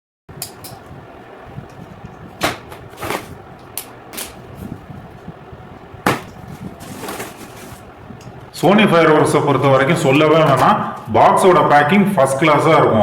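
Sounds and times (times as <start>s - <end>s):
cardboard box knocks and scrapes: 6.1s - 7.8s.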